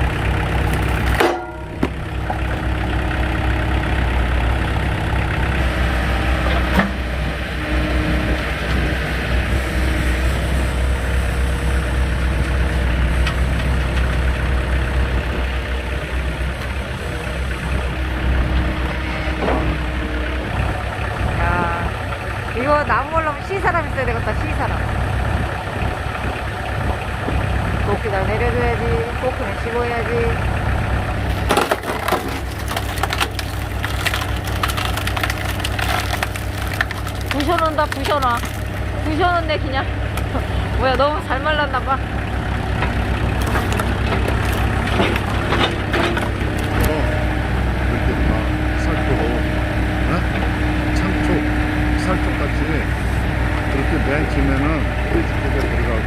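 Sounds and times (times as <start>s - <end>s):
wood cracking and splintering: 0.0s - 7.1s, 30.5s - 41.1s, 42.2s - 47.8s
diesel engine running: 0.0s - 56.0s.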